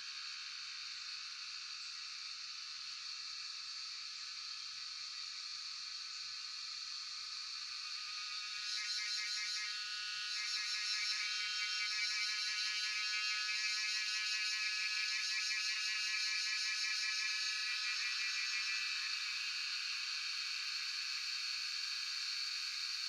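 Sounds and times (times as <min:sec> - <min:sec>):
cicadas singing: 0:01.8 - 0:23.0.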